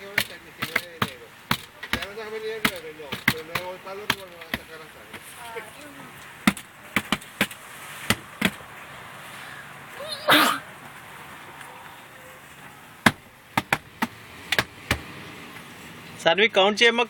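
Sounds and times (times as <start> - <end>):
child pretend sneeze: 10.0 - 10.7.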